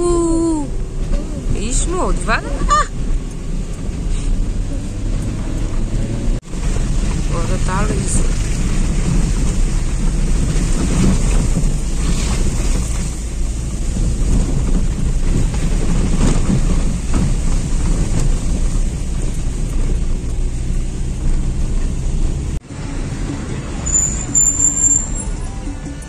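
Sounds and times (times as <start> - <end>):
car road and engine rumble: 0.0 - 26.0.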